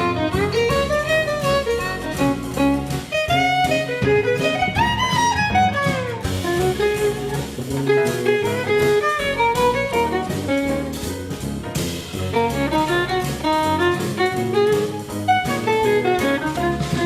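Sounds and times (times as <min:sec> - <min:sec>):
instrumental music with guitar: 0:00.0 - 0:17.0.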